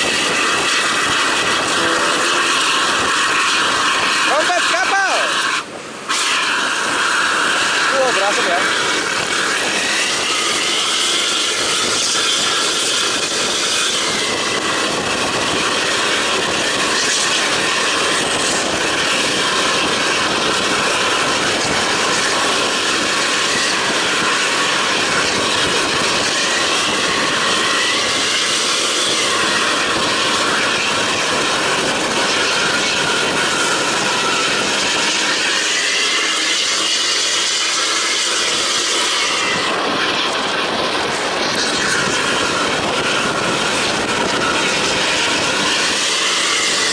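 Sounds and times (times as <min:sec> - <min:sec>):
vehicle road and engine noise: 0:00.0 - 0:04.3, 0:38.0 - 0:46.9
high whine: 0:00.0 - 0:46.9.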